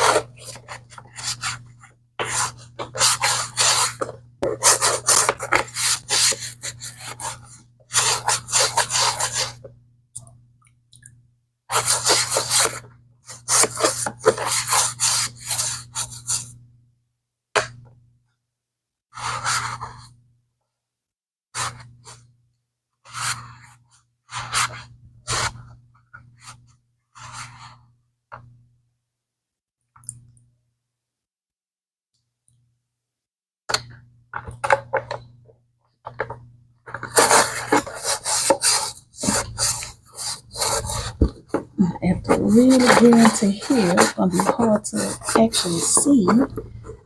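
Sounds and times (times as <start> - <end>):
brush scrubbing leather bag: 42.1 - 46.5.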